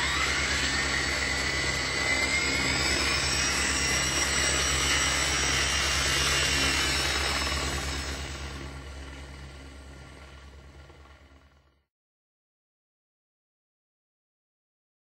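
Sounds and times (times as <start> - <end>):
helicopter running: 0.0 - 11.8.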